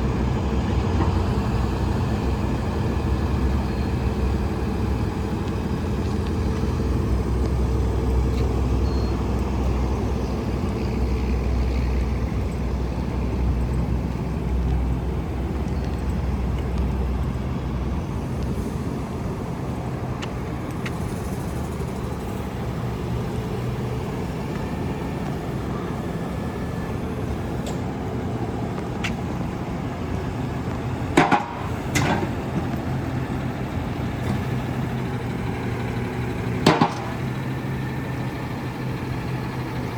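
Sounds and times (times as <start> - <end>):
diesel truck engine rumbling: 0.0 - 39.9.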